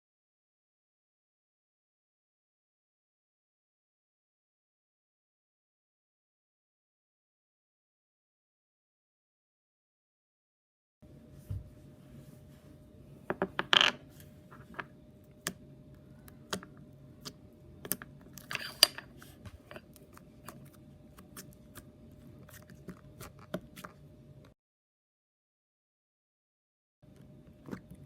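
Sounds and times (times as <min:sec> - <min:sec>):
slime squelching: 0:19.2 - 0:24.1.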